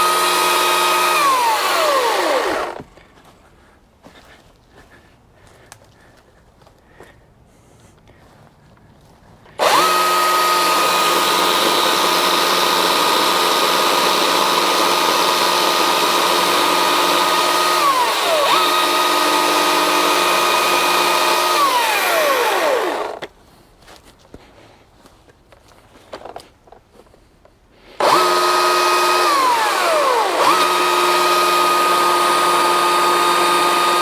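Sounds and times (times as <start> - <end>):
electric chainsaw whining: 0.0 - 2.9, 9.6 - 23.3, 28.0 - 34.0.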